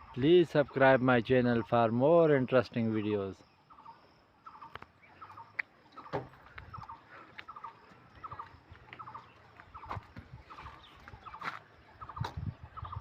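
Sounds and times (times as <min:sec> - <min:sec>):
birds chattering: 0:00.0 - 0:13.0.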